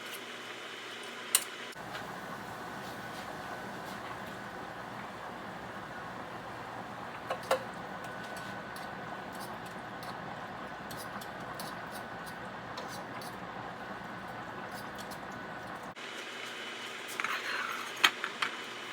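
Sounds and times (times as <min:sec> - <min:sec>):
steady hum: 0:01.7 - 0:16.0.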